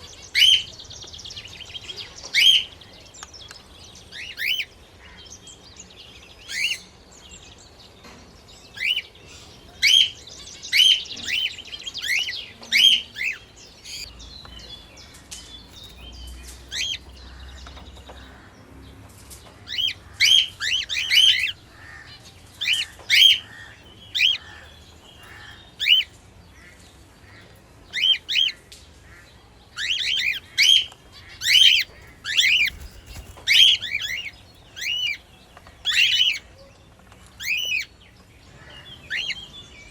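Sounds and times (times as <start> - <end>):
parrots chirping: 19.6 - 28.6, 29.8 - 36.6.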